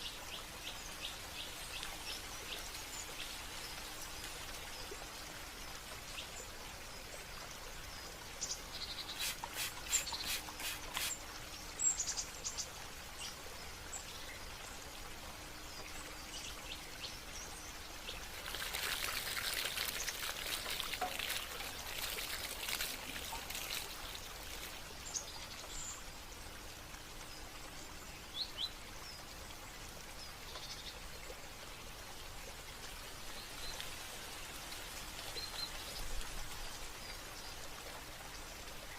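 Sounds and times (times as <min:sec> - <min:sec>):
water trickling: 0:00.0 - 0:38.9
small birds chirping: 0:08.4 - 0:12.7.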